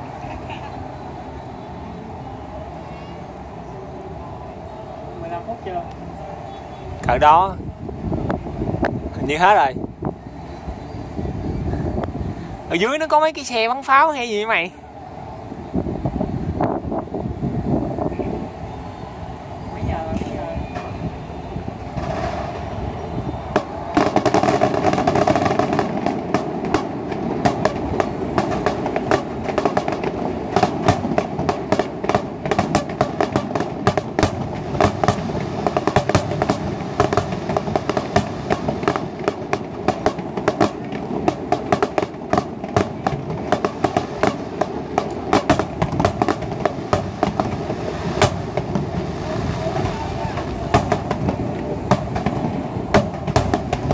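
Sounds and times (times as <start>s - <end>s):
background rumble: 14.2s - 53.9s
fireworks bangs and crackles: 19.7s - 53.9s.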